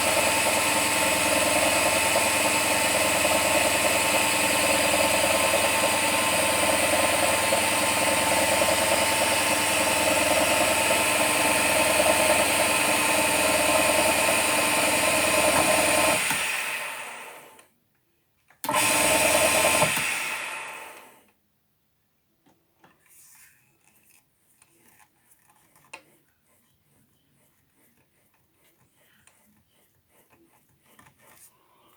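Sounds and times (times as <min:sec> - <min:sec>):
lathe spindle whining: 0:00.0 - 0:17.5.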